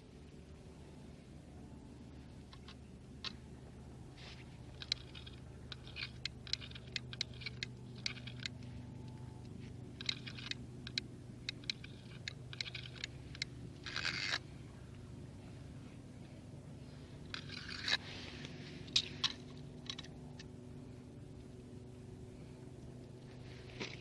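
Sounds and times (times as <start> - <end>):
steady low hum: 0.0 - 24.0
fishing gear clicks and scrapes: 4.3 - 14.5, 17.2 - 20.5.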